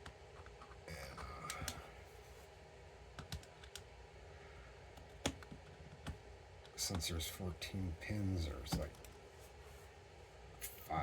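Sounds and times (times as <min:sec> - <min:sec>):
light clicks and taps: 0:08.6 - 0:09.2.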